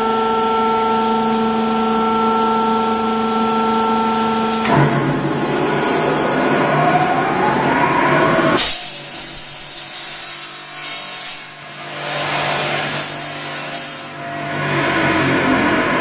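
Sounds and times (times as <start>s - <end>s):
roll forming machine whine: 0.0s - 10.0s, 13.8s - 16.0s
saw grinding through steel: 3.8s - 15.9s
loud metal clank: 4.6s - 7.5s, 8.6s - 9.6s.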